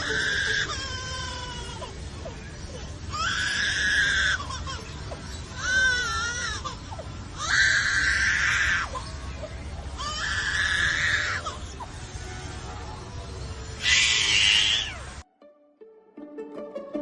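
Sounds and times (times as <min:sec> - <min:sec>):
bird wailing calls: 0:00.0 - 0:12.1, 0:13.8 - 0:15.2.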